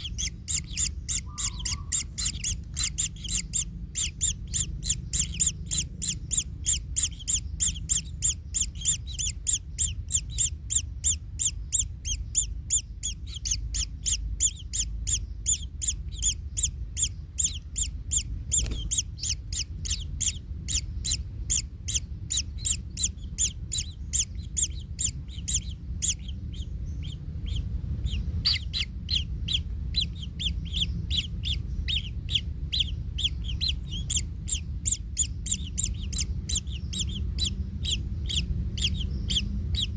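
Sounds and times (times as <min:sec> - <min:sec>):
nestlings chirping: 0:00.0 - 0:39.9
steady low rumble: 0:00.0 - 0:39.9.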